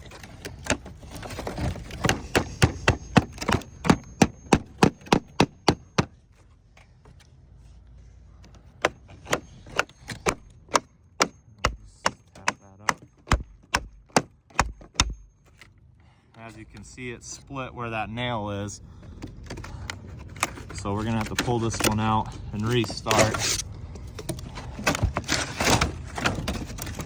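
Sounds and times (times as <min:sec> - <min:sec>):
hammer tapping roofing nails: 0:00.1 - 0:06.2, 0:08.4 - 0:15.6.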